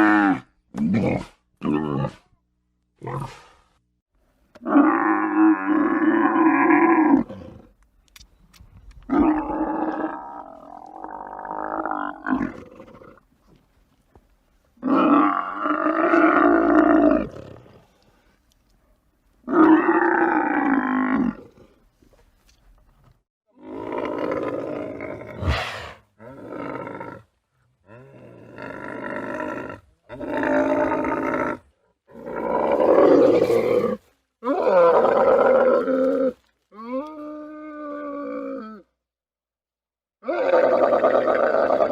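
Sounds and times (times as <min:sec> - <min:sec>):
camel roaring: 0:09.1 - 0:13.2, 0:14.8 - 0:18.0, 0:27.9 - 0:38.9, 0:40.2 - 0:41.9.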